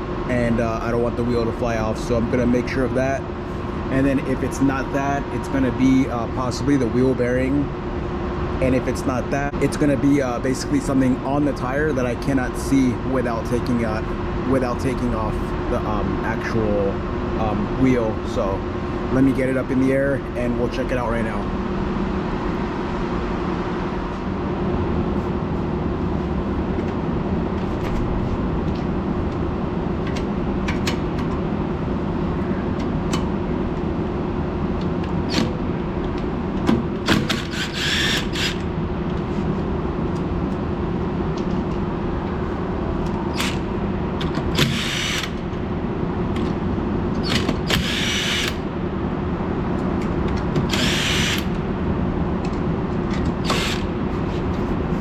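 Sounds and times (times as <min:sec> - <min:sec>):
steady low hum: 0:00.0 - 0:55.0
impact wrench bursts: 0:37.0 - 0:38.7, 0:44.5 - 0:45.4, 0:47.2 - 0:48.6, 0:50.7 - 0:51.6, 0:53.4 - 0:53.9.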